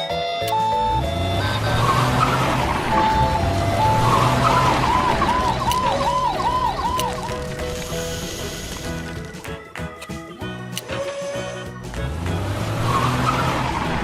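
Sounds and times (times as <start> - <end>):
held music notes: 0.0 - 13.6
cartoon car engine rushing: 0.5 - 9.1, 12.0 - 14.0
siren-like tone: 0.6 - 7.5.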